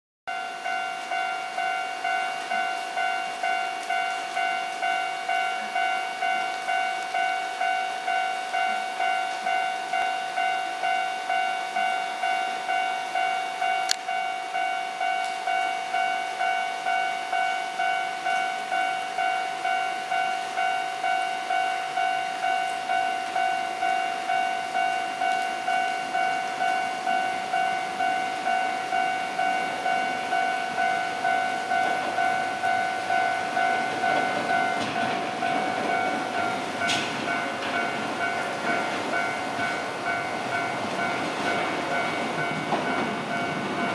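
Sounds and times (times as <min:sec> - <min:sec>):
level-crossing warning bell: 0:00.3 - 0:43.9
low rumble of rail vehicle: 0:00.3 - 0:43.9.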